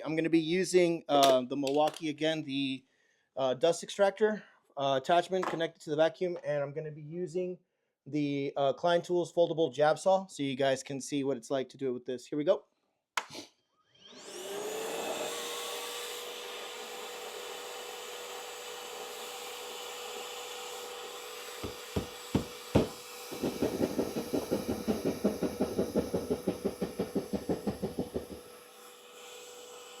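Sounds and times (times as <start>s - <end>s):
vacuum whining: 14.1s - 15.9s, 20.9s - 28.7s
hand saw sawing drywall: 14.3s - 30.0s
saw knocking into drywall: 20.9s - 29.0s.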